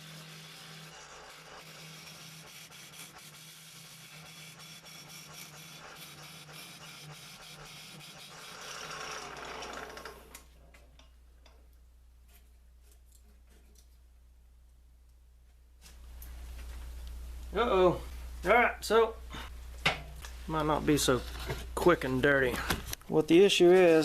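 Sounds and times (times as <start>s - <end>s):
gouge scraping wood on lathe: 0.0s - 10.0s.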